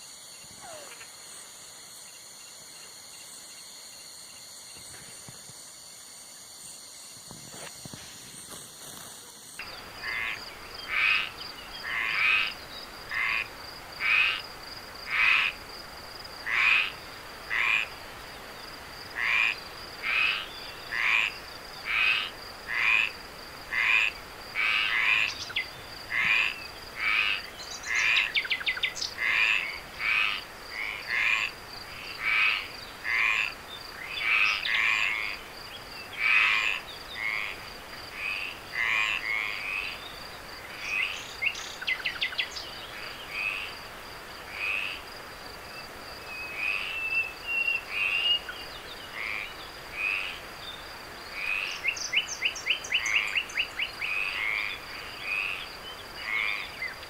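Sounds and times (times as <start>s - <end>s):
frog calling: 0.6s - 1.2s, 9.6s - 14.4s, 15.1s - 15.6s, 16.4s - 18.0s, 19.1s - 40.0s, 49.1s - 50.4s, 51.3s - 57.0s.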